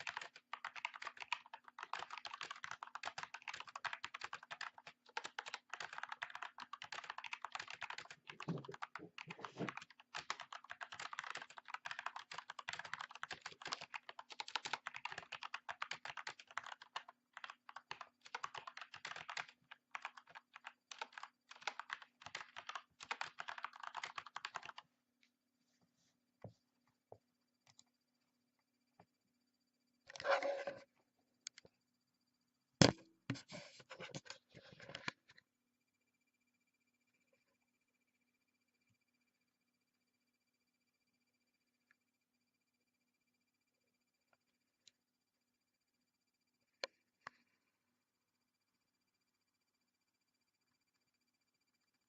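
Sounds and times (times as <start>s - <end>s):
typing on mechanical keyboard: 0.0s - 24.8s.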